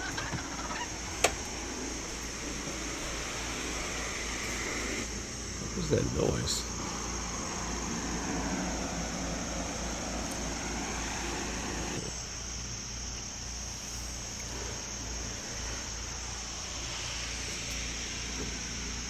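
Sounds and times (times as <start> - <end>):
propeller aircraft droning overhead: 0.0 - 12.6
high-pitched insect drone: 0.0 - 19.0.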